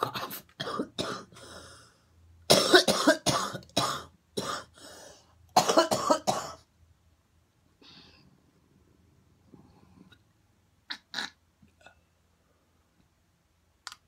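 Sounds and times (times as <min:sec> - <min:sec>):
woman coughing hard: 0:00.0 - 0:01.3, 0:02.5 - 0:04.8, 0:05.6 - 0:06.6.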